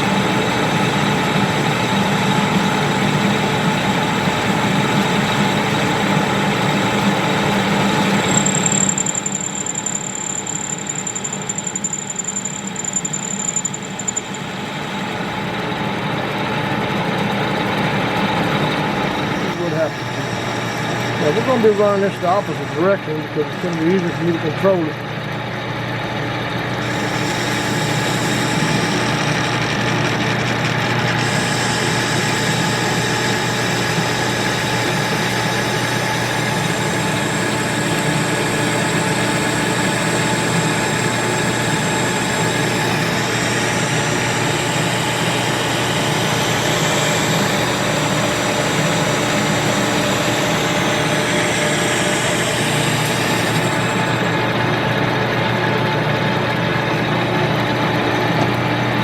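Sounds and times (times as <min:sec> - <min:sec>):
lathe running: 0:00.0 - 0:59.0
phase converter low hum: 0:00.0 - 0:59.0
high whine: 0:03.2 - 0:16.3, 0:18.3 - 0:24.8, 0:31.2 - 0:55.3.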